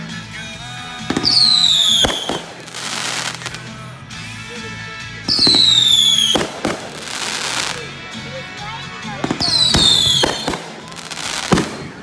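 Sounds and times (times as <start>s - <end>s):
firework crackling: 0.0s - 4.1s, 5.2s - 12.0s
firework bang: 1.0s - 3.7s, 5.3s - 7.9s, 9.2s - 12.0s.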